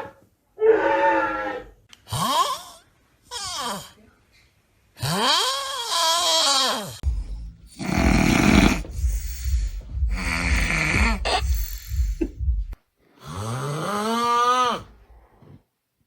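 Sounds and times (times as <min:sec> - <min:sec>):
person snoring: 0:07.7 - 0:12.3, 0:13.2 - 0:15.0.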